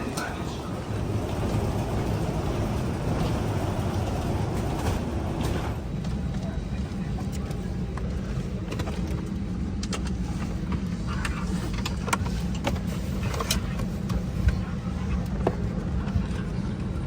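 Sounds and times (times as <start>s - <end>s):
airplane cabin rumble: 0.0s - 17.0s.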